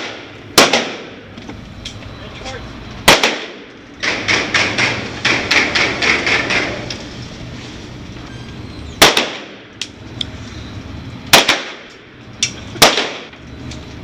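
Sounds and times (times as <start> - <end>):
loud gunshots: 0.0 - 1.2, 3.0 - 6.8, 9.0 - 9.6, 11.3 - 11.9, 12.8 - 13.3.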